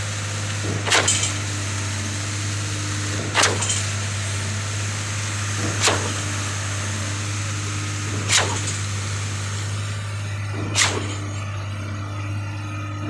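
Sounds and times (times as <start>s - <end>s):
pump engine drone: 0.0s - 13.0s
sharp knock of pump cylinders: 5.6s - 6.2s.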